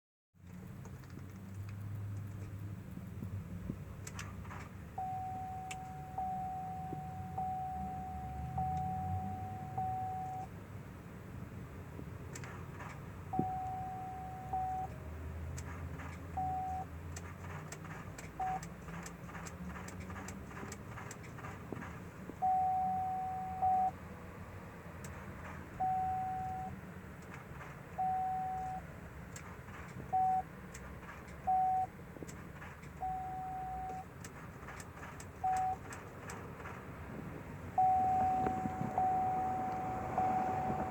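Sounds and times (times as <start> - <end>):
steady electronic beep: 5.0 - 10.5, 13.4 - 14.9, 22.4 - 24.0, 25.8 - 26.7, 28.0 - 28.8, 33.0 - 34.0, 37.8 - 40.9.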